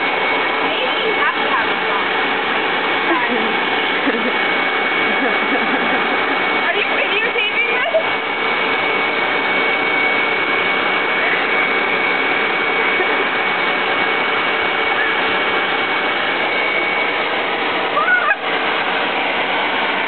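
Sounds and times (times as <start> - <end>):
vacuum cleaner running: 0.0 - 20.0.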